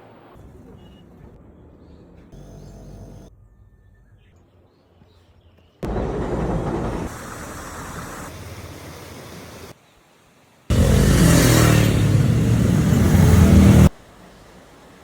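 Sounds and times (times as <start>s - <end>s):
vehicle engine running: 10.7s - 14.0s.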